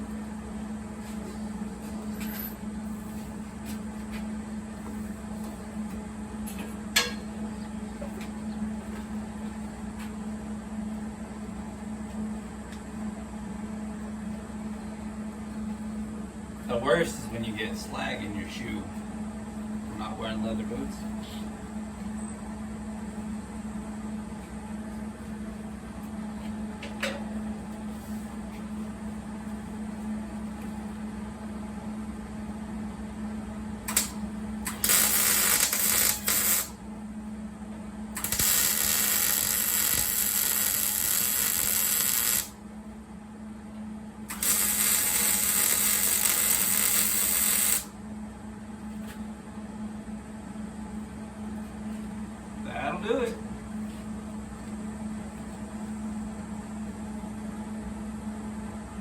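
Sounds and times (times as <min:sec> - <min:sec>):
steady low hum: 0:00.0 - 0:59.0
arc welding hiss: 0:33.9 - 0:36.8, 0:38.2 - 0:42.6, 0:44.3 - 0:47.9.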